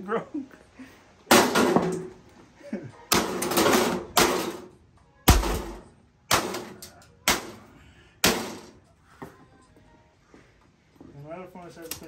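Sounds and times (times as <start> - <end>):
heavy blows smashing metal and plastic: 1.3 - 2.2, 3.1 - 8.8.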